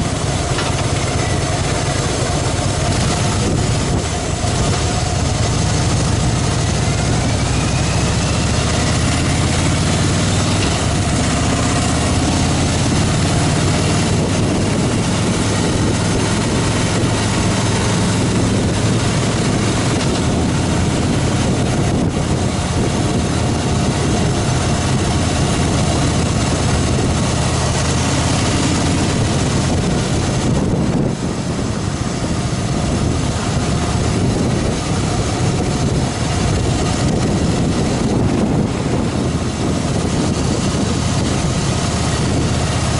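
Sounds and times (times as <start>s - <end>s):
motorcycle engine running: 0.0s - 42.9s
wind rush on microphone: 0.0s - 42.9s.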